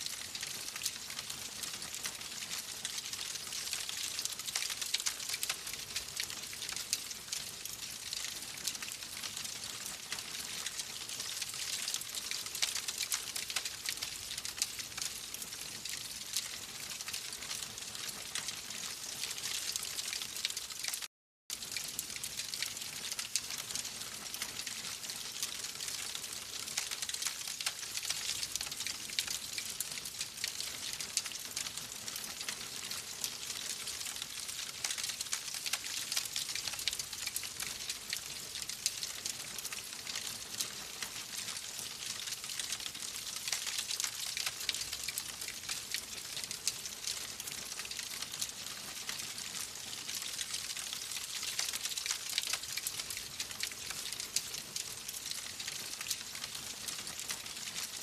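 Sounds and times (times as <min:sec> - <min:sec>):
wood fire crackling: 0:00.0 - 0:15.5, 0:21.6 - 0:48.2.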